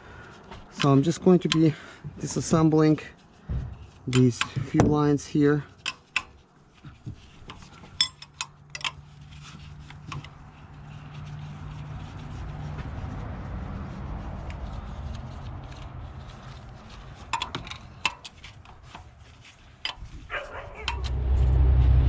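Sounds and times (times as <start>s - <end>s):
metal tools clinking: 7.5s - 9.1s
low rumble: 20.5s - 22.0s.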